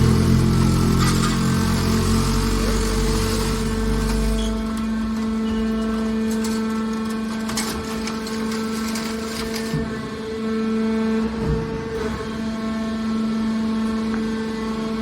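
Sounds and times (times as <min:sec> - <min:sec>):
deep machine rumble: 0:00.0 - 0:06.3
motor and pump hum: 0:00.0 - 0:15.0.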